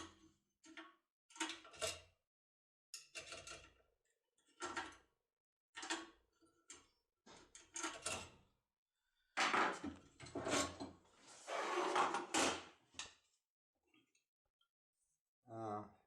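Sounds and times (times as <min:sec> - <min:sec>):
rough scraping of lock mechanism: 0:09.4 - 0:12.7.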